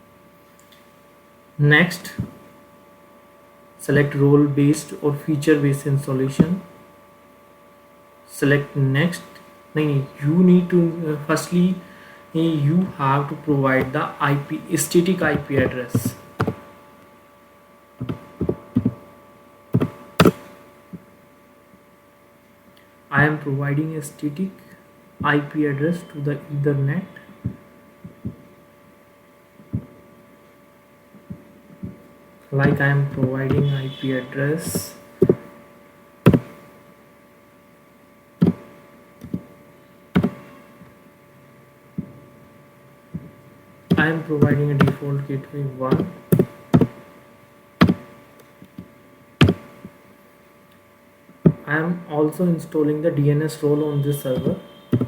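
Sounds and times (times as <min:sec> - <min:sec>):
faint electrical hum: 0:00.0 - 0:55.0
sharp computer clicks: 0:19.8 - 0:20.5, 0:32.6 - 0:33.9, 0:36.3 - 0:36.6, 0:38.4 - 0:39.5, 0:40.2 - 0:40.4, 0:43.9 - 0:45.2, 0:45.9 - 0:47.0, 0:47.8 - 0:48.1, 0:48.7 - 0:50.0
computer mouse clicks: 0:40.2 - 0:40.4.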